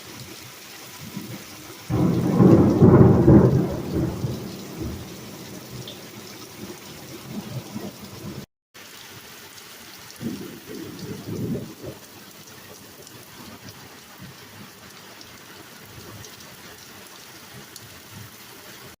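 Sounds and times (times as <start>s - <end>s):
rain pouring: 0.0s - 19.0s
low rumble of thunder: 1.1s - 8.5s, 10.2s - 12.1s.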